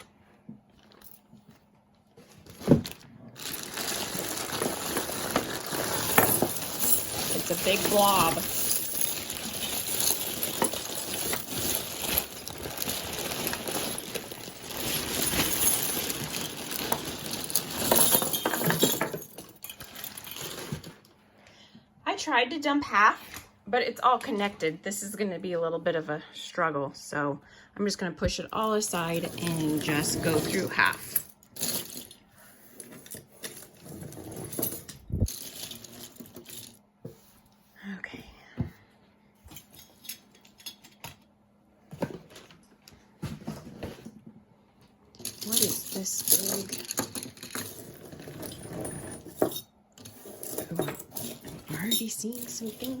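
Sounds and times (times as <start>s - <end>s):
jewelry chains clinking and jangling: 3.4s - 20.9s, 28.6s - 36.8s, 45.2s - 53.0s.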